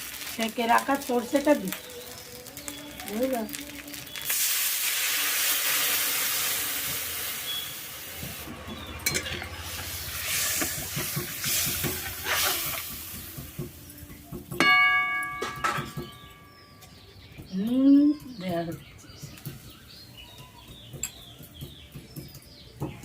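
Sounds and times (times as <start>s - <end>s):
paste sizzling in hot oil: 0.0s - 8.5s, 9.5s - 13.6s.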